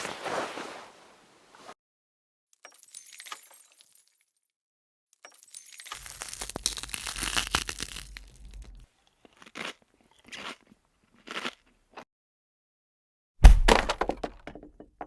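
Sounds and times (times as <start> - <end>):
crackling crunch: 6.0 - 12.0.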